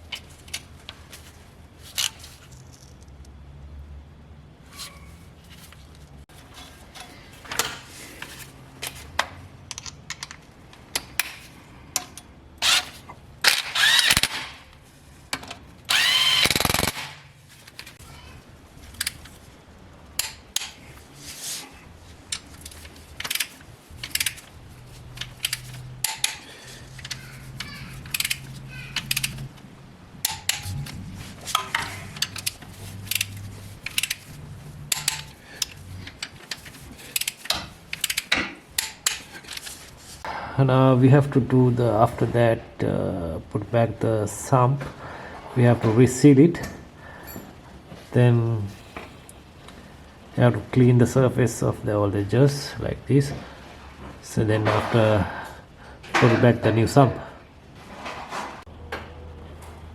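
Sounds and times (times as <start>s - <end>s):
power tool whirring: 12.6s - 14.6s, 15.9s - 17.3s
sharp clicks: 13.5s - 14.6s, 15.9s - 17.2s, 25.2s - 29.5s
metal tools clinking: 22.3s - 29.6s, 30.2s - 39.8s.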